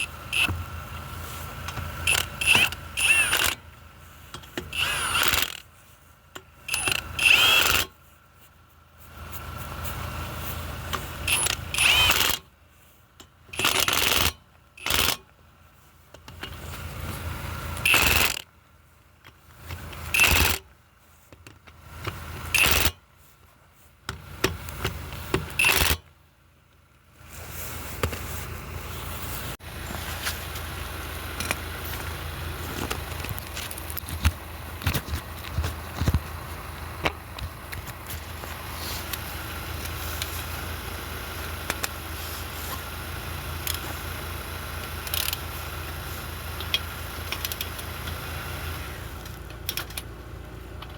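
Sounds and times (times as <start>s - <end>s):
impact wrench bursts: 0.0s - 0.6s, 2.0s - 3.6s, 4.4s - 5.7s, 6.6s - 8.0s, 11.2s - 12.5s, 13.5s - 15.3s, 17.8s - 18.5s, 20.0s - 20.7s, 22.5s - 23.0s, 25.3s - 26.1s
low running hum: 0.0s - 50.9s
scattered clicks: 46.6s - 48.2s.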